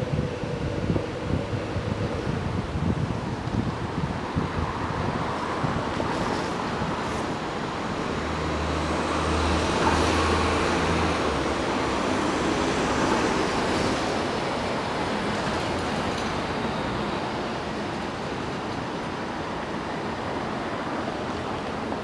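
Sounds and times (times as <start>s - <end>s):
wind noise: 0.0s - 20.4s
road traffic: 0.0s - 22.0s
passing vehicle engine hum: 4.3s - 17.5s.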